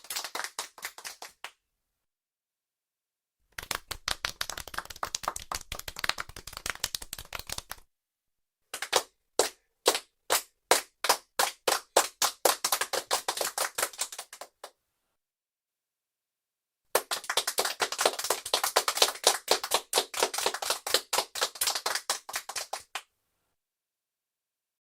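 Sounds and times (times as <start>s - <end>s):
small group clapping: 0.0s - 1.6s, 3.5s - 7.9s, 8.7s - 14.8s, 16.9s - 23.1s.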